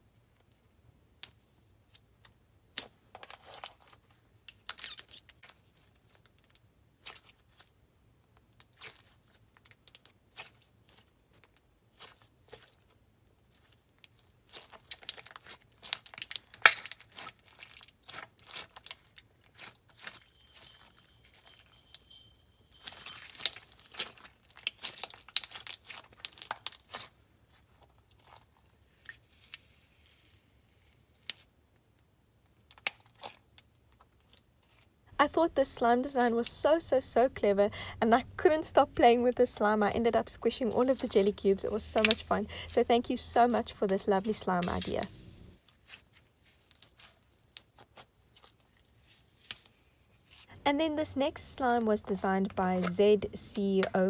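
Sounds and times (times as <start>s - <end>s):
slime squished by hand: 8.6s - 20.7s, 22.9s - 29.8s, 32.7s - 33.6s, 45.8s - 50.5s.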